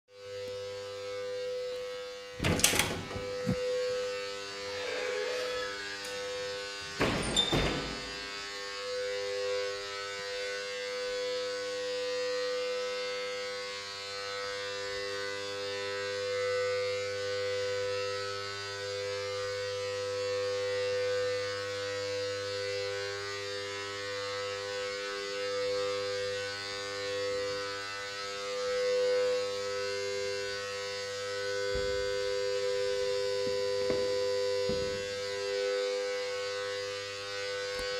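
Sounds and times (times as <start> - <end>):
electrical hum: 0.2 - 12.8, 27.3 - 37.9.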